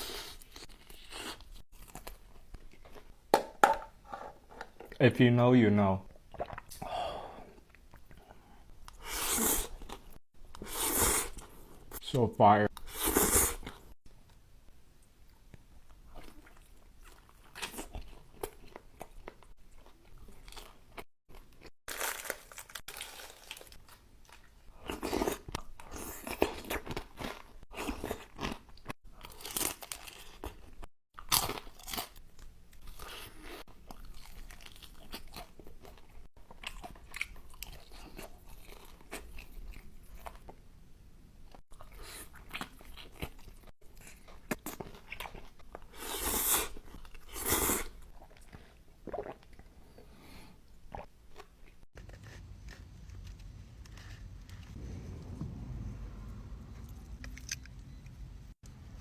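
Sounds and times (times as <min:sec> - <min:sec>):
crunchy chewing of food: 0:15.5 - 0:40.6, 0:41.5 - 0:54.8.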